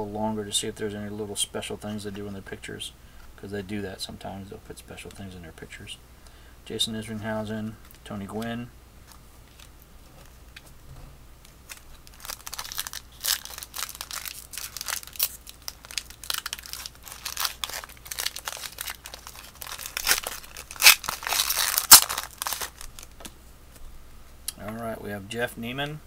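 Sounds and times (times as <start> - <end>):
plastic wrapper crinkling: 11.4 - 23.4.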